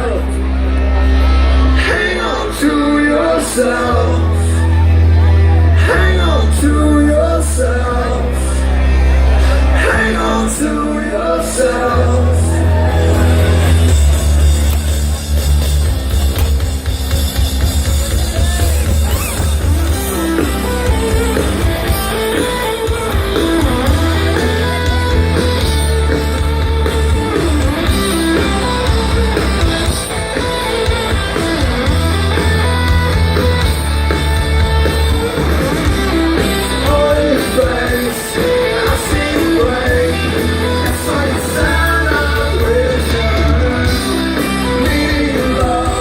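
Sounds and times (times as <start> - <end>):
bass: 0.0 - 46.0
drums: 0.0 - 46.0
electric guitar lines: 0.0 - 46.0.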